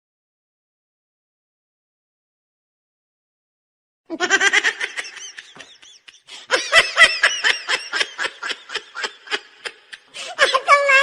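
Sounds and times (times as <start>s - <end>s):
high-pitched laughter: 4.1s - 11.0s.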